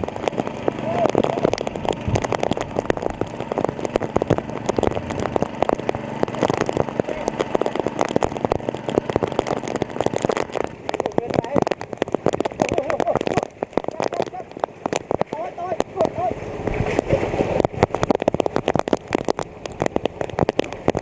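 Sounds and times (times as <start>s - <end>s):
rain crackling: 0.0s - 21.0s
small water pump running: 0.0s - 21.0s.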